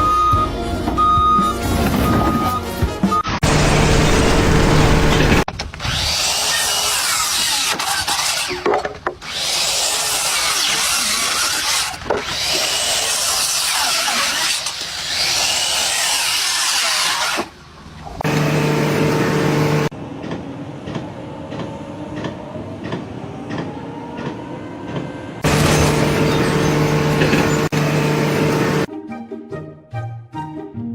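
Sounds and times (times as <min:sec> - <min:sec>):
power tool grinding: 0:03.4 - 0:17.5, 0:18.2 - 0:19.9, 0:25.4 - 0:28.9.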